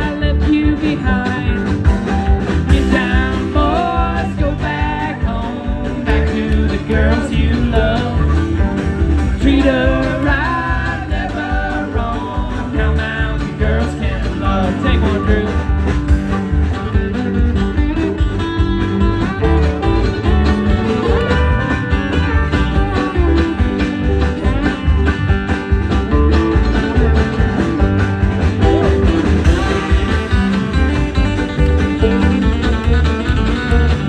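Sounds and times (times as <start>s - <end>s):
guitar strumming: 0.0s - 34.0s
walking bass line: 0.0s - 34.0s.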